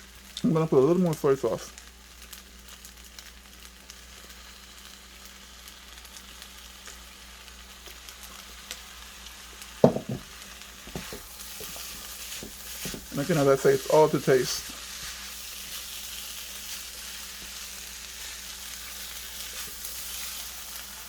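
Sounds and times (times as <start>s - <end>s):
rice sizzling in a pan: 0.0s - 21.0s
knocks on pan: 9.8s - 10.3s.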